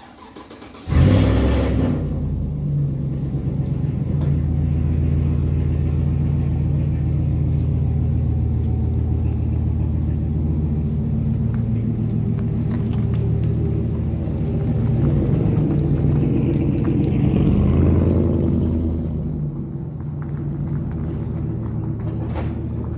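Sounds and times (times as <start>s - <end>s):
truck engine idling: 0.0s - 22.9s.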